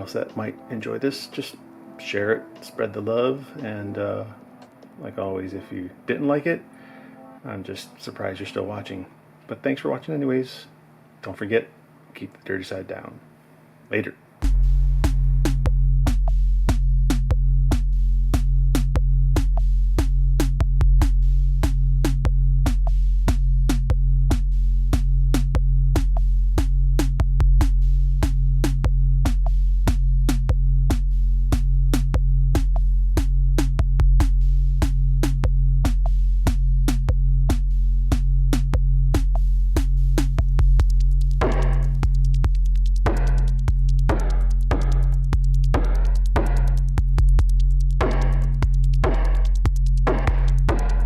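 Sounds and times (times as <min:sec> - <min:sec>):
electronic music: 0:00.0 - 0:08.8, 0:39.2 - 0:51.0
bass line: 0:14.4 - 0:51.0
drum machine beat: 0:14.4 - 0:51.0.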